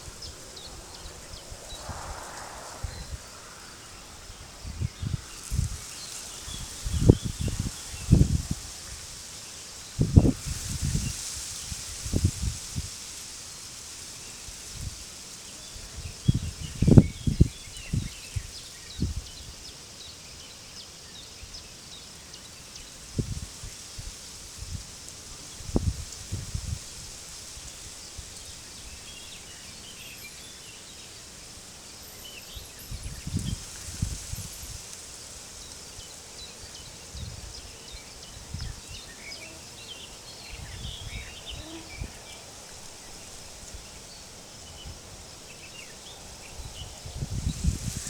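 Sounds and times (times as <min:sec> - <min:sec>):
wind gusting: 0:00.0 - 0:09.0, 0:31.2 - 0:48.0
steady high hiss: 0:00.0 - 0:48.0.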